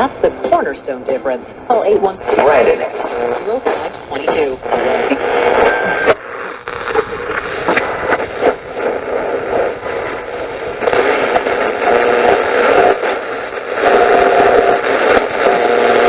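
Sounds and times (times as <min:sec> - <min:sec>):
radio static hiss: 0:00.0 - 0:16.0
short steady tones: 0:04.2 - 0:14.7.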